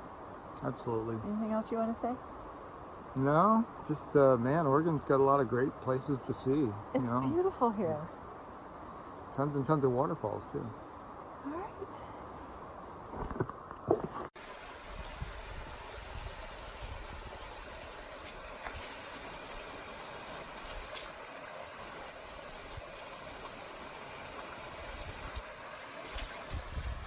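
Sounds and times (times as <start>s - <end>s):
flowing water rushing: 14.4s - 27.0s.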